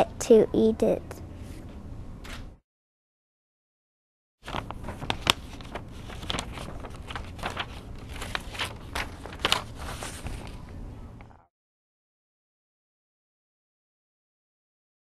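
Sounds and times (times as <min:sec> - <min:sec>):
rustles: 0:04.5 - 0:10.6.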